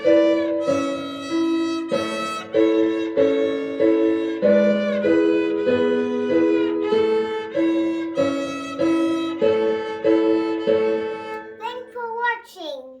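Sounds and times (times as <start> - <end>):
violin playing simple melody: 0.0 - 11.6
child's voice: 11.6 - 13.0.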